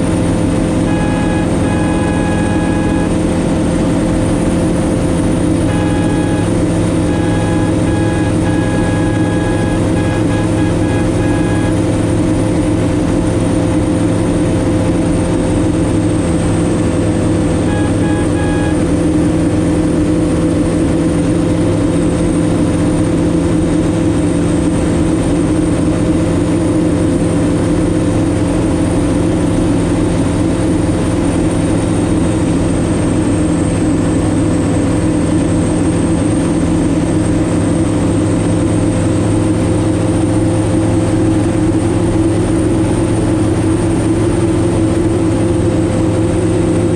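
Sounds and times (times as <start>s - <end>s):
light aircraft engine droning: 0.0s - 46.9s
short beeps: 0.8s - 3.5s, 5.3s - 12.1s, 17.5s - 19.2s.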